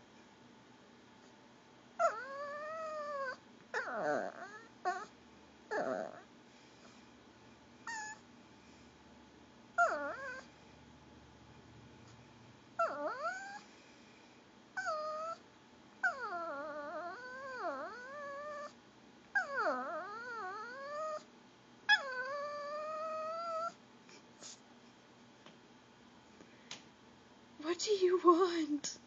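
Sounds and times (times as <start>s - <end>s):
dog whining: 2.0s - 6.3s, 7.8s - 8.2s, 9.8s - 10.5s, 12.8s - 13.6s, 14.8s - 15.4s, 16.0s - 21.3s, 21.9s - 23.8s.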